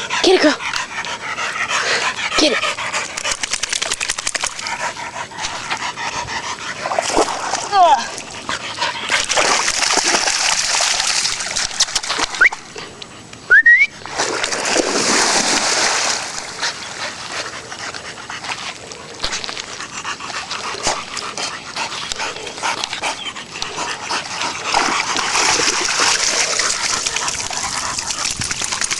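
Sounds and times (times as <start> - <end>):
dog splashing through water: 6.8 - 8.4, 9.0 - 12.6, 14.0 - 17.0, 24.2 - 28.9.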